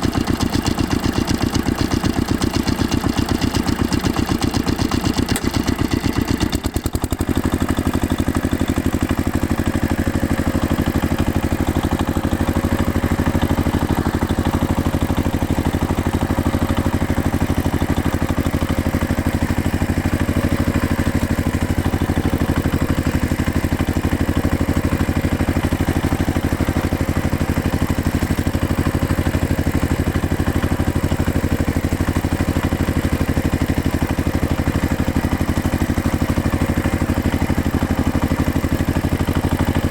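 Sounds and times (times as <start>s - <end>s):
tractor engine running: 0.0s - 39.9s.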